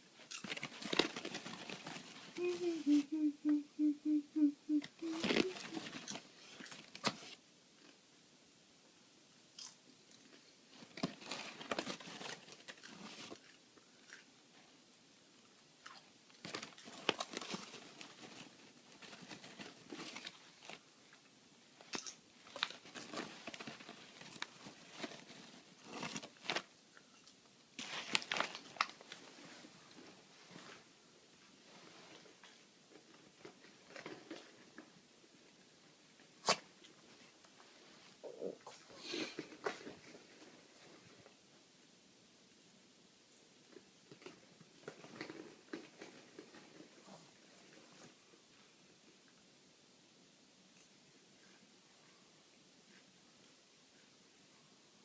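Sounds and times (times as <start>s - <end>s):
popcorn crunching and chewing: 0.2s - 1.8s.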